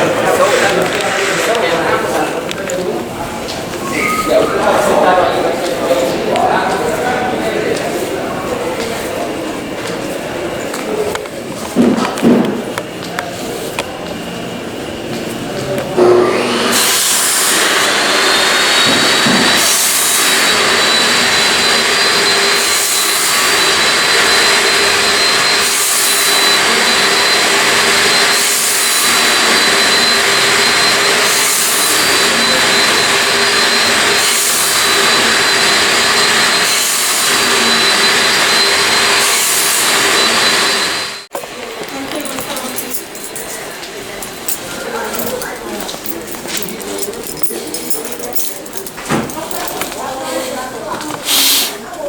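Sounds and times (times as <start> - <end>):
machine motor whining: 15.8 - 41.3.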